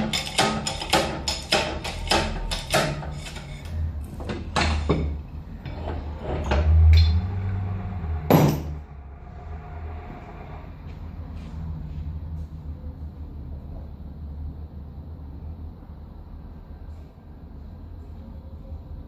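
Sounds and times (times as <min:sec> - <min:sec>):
hammer striking metal: 0:00.0 - 0:03.7, 0:08.2 - 0:08.9
steady low hum: 0:00.0 - 0:19.0.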